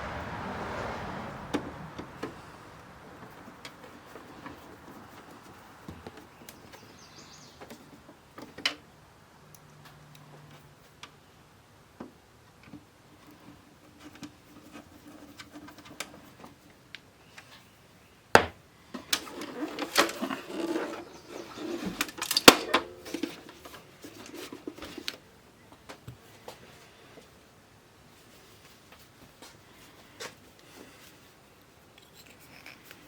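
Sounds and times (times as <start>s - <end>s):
rattling and scraping: 19.0s - 25.2s.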